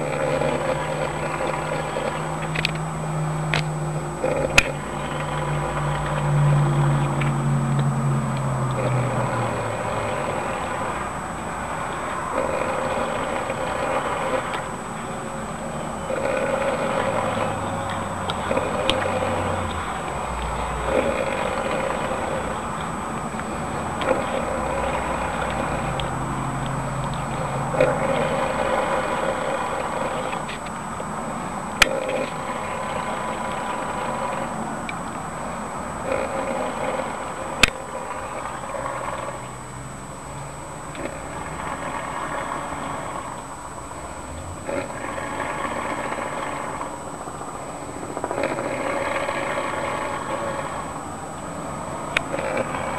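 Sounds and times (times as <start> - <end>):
sharp clicks: 0.0 - 14.8, 16.1 - 31.0.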